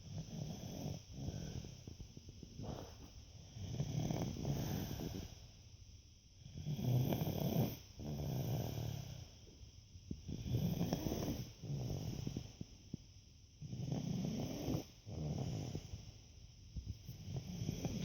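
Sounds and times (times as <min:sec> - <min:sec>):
snoring: 0:00.0 - 0:02.0, 0:02.6 - 0:05.4, 0:06.4 - 0:09.3, 0:10.2 - 0:12.6, 0:13.6 - 0:16.1, 0:17.1 - 0:18.0.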